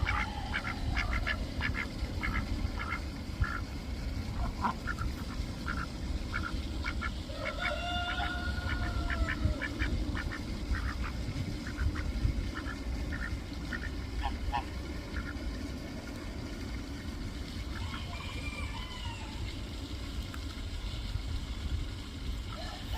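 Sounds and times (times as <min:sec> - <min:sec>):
ducks quacking: 0:00.0 - 0:03.7, 0:04.3 - 0:15.4
steady low rumble: 0:00.0 - 0:22.9.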